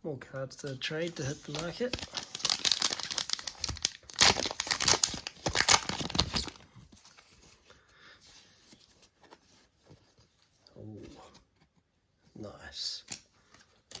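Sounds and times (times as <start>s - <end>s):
faint rustling of handling: 0.5s - 4.0s, 4.7s - 14.0s
foil wrapper tearing and crinkling: 1.2s - 6.6s.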